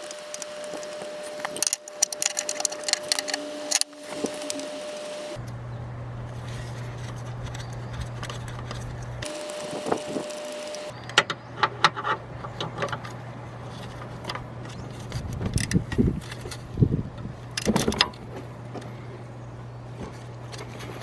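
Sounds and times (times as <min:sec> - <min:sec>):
steady low hum: 0:00.0 - 0:05.4, 0:09.2 - 0:10.9.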